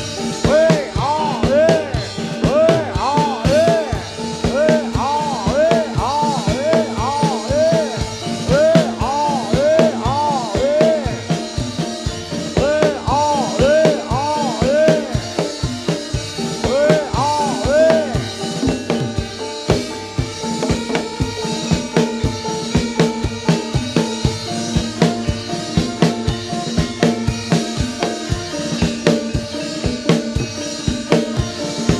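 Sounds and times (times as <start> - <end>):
rapid drumming: 0.0 - 31.9
swooping repeated notes: 0.0 - 31.9.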